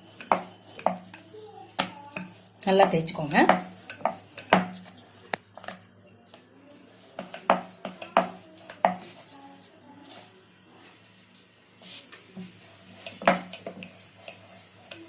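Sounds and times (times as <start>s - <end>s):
rolling pin knocking on dough: 0.1s - 4.8s, 7.1s - 9.2s, 13.1s - 15.0s.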